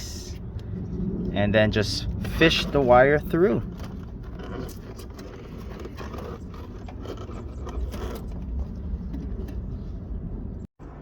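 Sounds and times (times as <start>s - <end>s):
steady low rumble: 0.0s - 11.0s.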